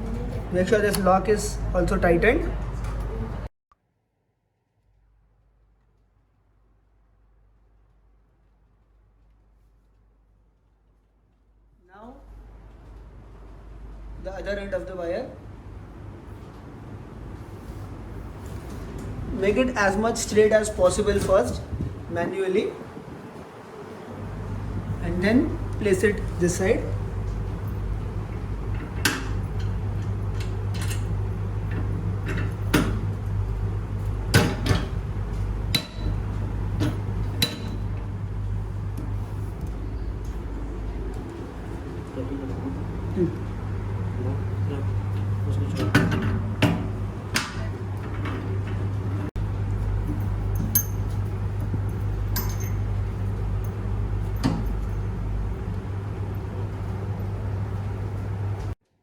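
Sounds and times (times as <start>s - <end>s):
steady low hum: 6.3s - 58.8s
metal clamp parts clinking: 52.3s - 53.0s.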